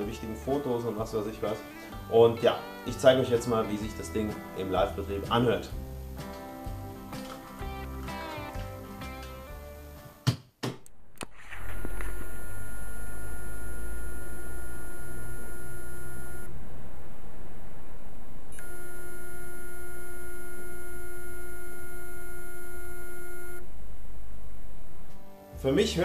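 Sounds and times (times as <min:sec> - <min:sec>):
high-pitched drive tone: 0:11.2 - 0:16.6, 0:18.5 - 0:26.0.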